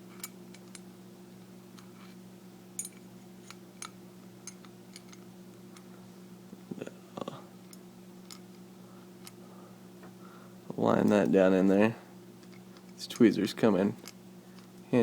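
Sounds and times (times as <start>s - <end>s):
steady low hum: 0.0s - 15.0s
metal padlock parts clicking: 2.8s - 5.2s.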